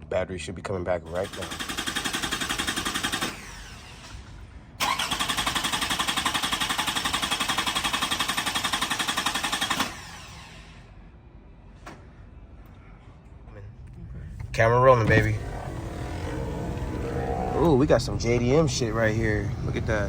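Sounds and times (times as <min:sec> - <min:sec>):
starter cranking car engine: 0:01.2 - 0:04.2, 0:04.8 - 0:10.2, 0:14.4 - 0:20.0.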